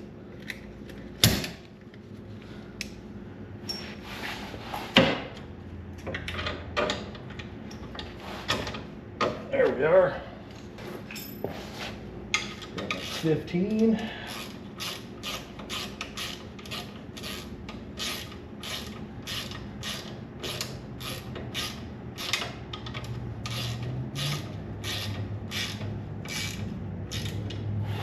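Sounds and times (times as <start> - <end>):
hand ratchet wrench cranking: 12.4 - 13.4, 14.3 - 27.7.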